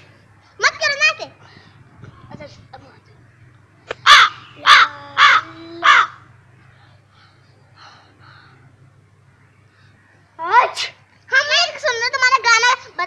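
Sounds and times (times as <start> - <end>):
crow cawing: 3.3 - 6.4.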